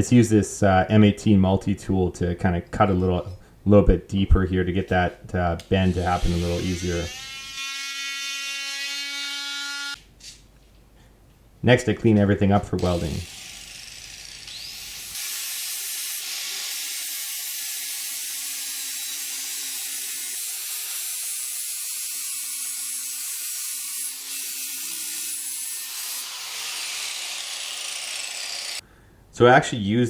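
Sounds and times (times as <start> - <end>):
grinder grinding steel: 5.8 - 10.0, 12.8 - 28.8.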